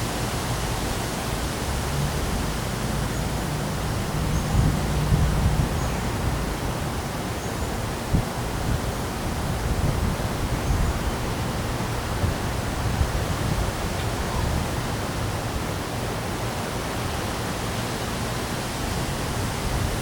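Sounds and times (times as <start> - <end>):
heavy wind: 0.0 - 20.0
rain: 0.0 - 20.0.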